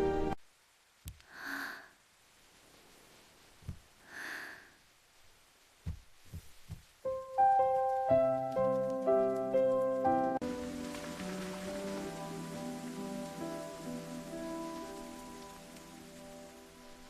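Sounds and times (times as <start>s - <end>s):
gentle music: 0.0s - 0.4s, 7.0s - 17.0s
soft puffs of air: 4.0s - 4.8s
short low thumps: 5.8s - 6.9s.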